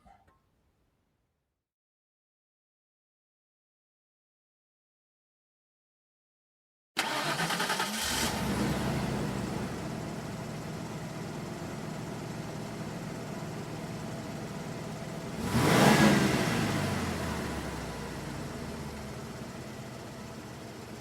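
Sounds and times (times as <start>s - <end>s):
engine revving: 7.0s - 10.1s, 15.2s - 18.9s
car engine starting and idling: 7.0s - 21.0s.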